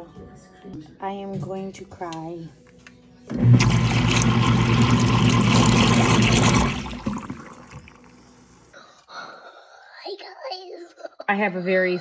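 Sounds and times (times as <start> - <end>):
garbage disposal motor humming: 3.3 - 8.2.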